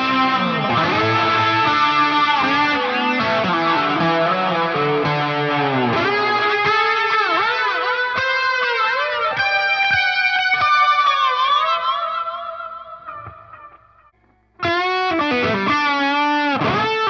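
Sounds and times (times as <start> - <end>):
overdriven electric guitar: 0.0 - 17.0.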